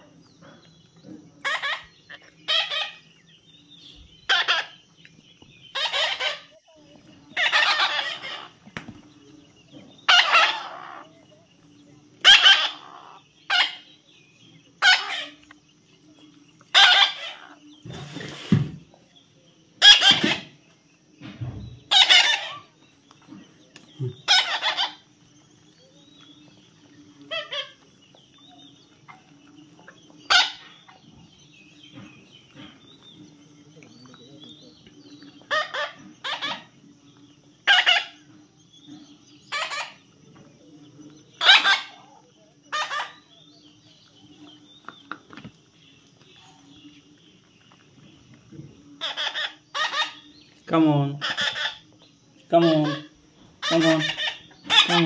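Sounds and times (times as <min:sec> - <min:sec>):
bird squawking: 0:01.4 - 0:03.1, 0:04.2 - 0:04.8, 0:05.7 - 0:06.7, 0:07.3 - 0:08.7, 0:10.0 - 0:11.2, 0:12.2 - 0:13.9, 0:16.7 - 0:17.6, 0:19.8 - 0:20.6, 0:21.9 - 0:22.8, 0:24.2 - 0:25.1, 0:30.2 - 0:31.0, 0:35.2 - 0:36.7, 0:37.6 - 0:38.3, 0:39.4 - 0:40.0, 0:41.4 - 0:43.4, 0:49.0 - 0:50.4, 0:51.2 - 0:51.9, 0:52.5 - 0:55.0.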